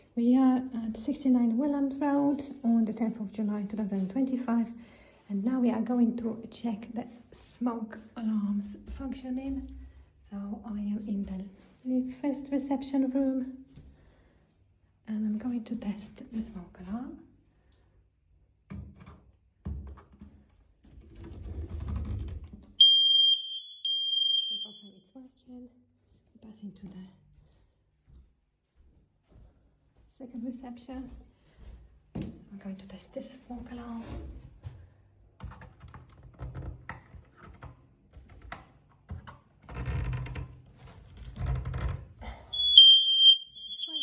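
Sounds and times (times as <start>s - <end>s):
smoke alarm tone: 22.8s - 24.9s, 42.5s - 44.0s.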